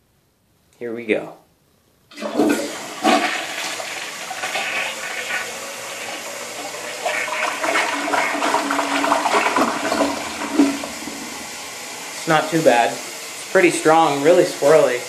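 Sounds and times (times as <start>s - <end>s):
toilet flushing: 2.1s - 15.0s.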